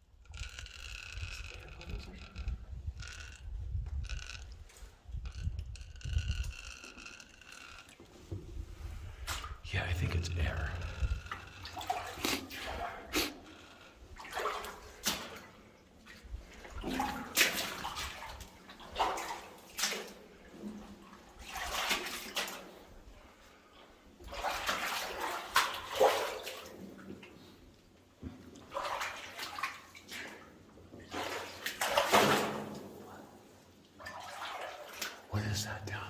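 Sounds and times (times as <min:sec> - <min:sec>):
footsteps sloshing through water: 0:10.8 - 0:22.9, 0:24.2 - 0:27.3, 0:28.3 - 0:35.3.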